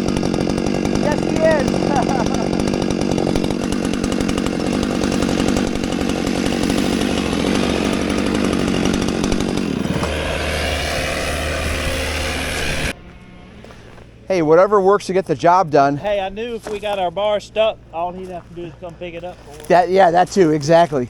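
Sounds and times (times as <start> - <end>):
chainsaw cutting wood: 0.0 - 14.3.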